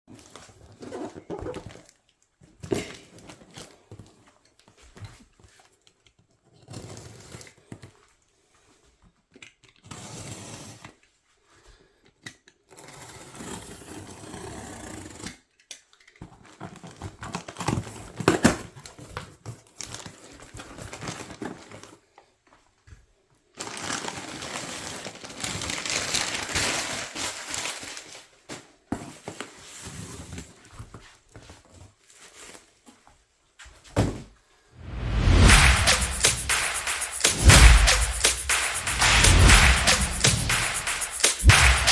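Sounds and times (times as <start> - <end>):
packaging crinkling and tearing: 23.6 - 28.0.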